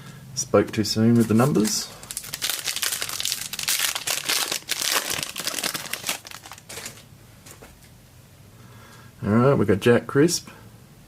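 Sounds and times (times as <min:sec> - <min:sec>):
plastic wrapper tearing and crinkling: 0:01.4 - 0:07.0.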